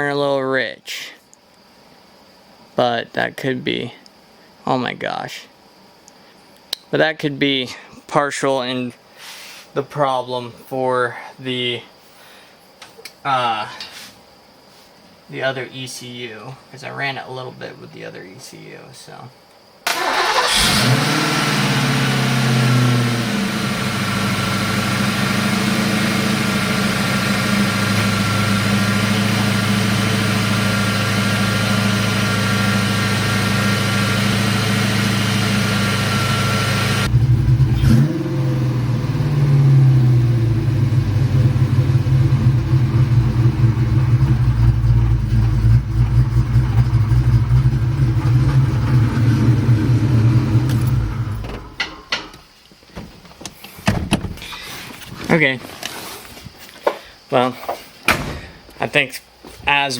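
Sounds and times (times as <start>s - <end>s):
car engine idling: 19.9s - 51.9s.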